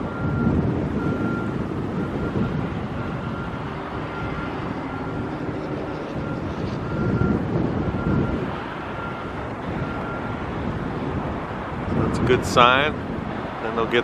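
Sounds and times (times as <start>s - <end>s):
distant vehicle engine: 0.0s - 14.0s
wind on microphone: 0.0s - 14.0s.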